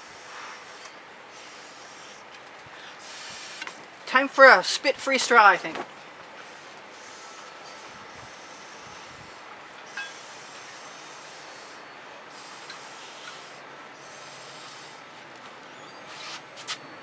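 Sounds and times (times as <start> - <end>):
breath blown through a straw: 6.4 - 15.0.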